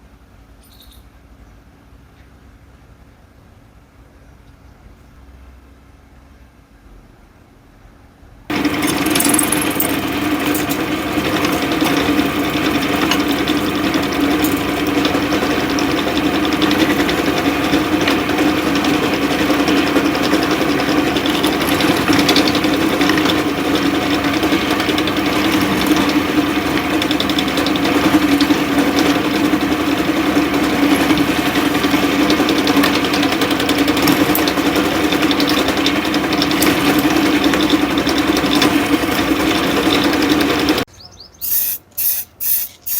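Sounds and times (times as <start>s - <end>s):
electric power tool motor humming: 8.5s - 40.8s.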